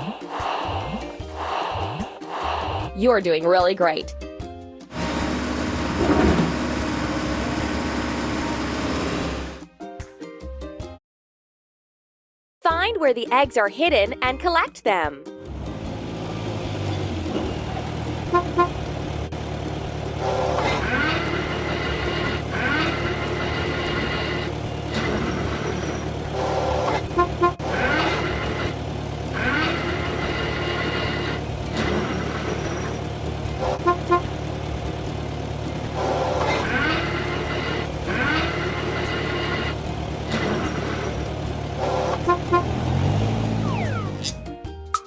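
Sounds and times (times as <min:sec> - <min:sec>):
cartoon engine hum: 0:17.5 - 0:44.4
double horn toots: 0:18.2 - 0:19.0, 0:20.1 - 0:34.6, 0:35.7 - 0:43.2.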